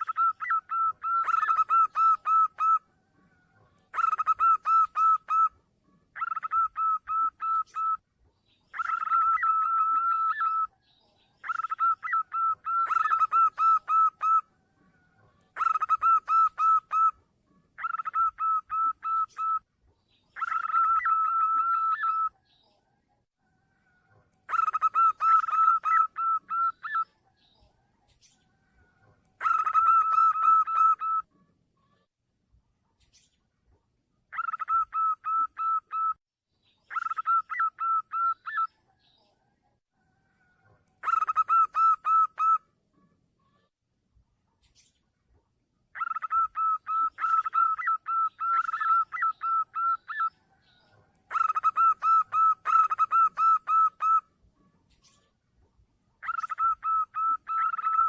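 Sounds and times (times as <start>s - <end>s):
dove stuttering coos: 0.0s - 2.8s, 3.9s - 5.5s, 11.4s - 14.4s, 15.6s - 17.1s, 24.5s - 27.0s, 29.4s - 31.2s, 41.0s - 42.6s, 46.0s - 50.3s, 51.3s - 54.2s, 56.2s - 58.0s.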